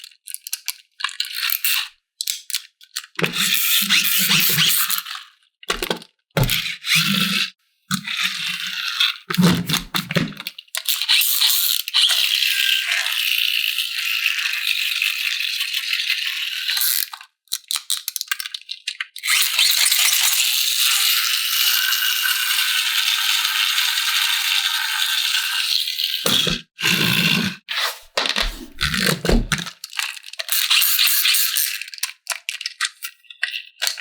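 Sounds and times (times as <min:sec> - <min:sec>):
plastic and cardboard rustling: 0:09.3 - 0:10.4, 0:26.2 - 0:29.7.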